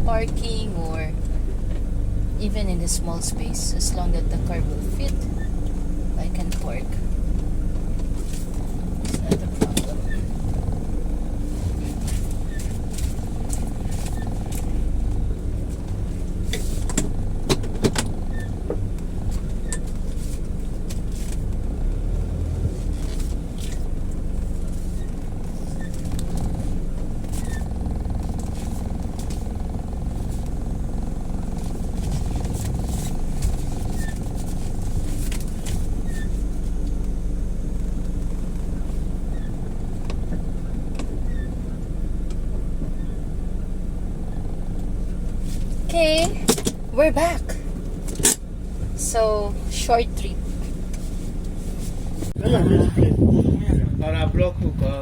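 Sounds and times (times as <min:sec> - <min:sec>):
car engine running: 0:00.0 - 0:55.0
sharp clicks and knocks: 0:46.2 - 0:46.9.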